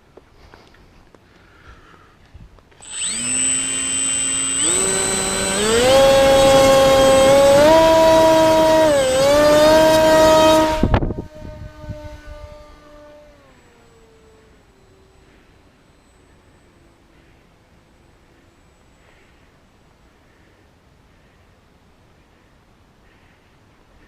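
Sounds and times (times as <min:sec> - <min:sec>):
electric motor whine: 0:02.7 - 0:19.4.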